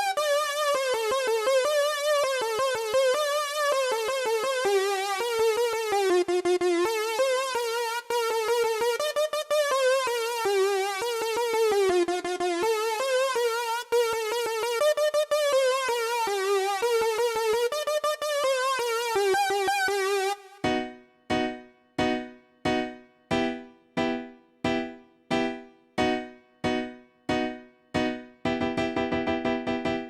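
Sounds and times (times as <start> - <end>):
keyboard chords: 0.0 - 30.0
synthesizer lead melody with vibrato: 0.0 - 30.0.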